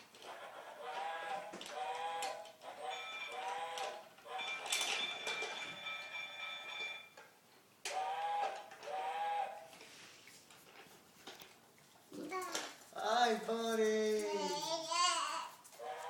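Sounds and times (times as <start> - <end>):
electronic toy tune: 2.8 - 6.8.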